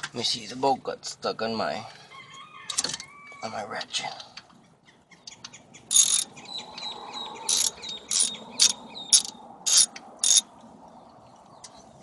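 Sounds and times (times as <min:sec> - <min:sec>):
socket ratchet clicking: 0:05.9 - 0:06.3, 0:07.5 - 0:10.4.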